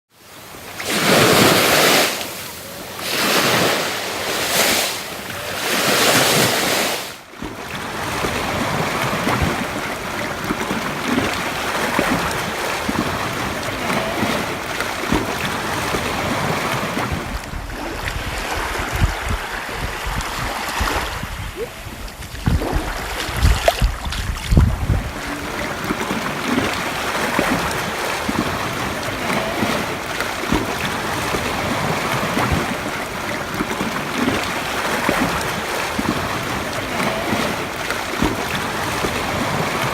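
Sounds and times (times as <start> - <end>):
sea waves breaking on shore: 0.1 - 39.9
wind buffeting microphone: 15.1 - 29.1.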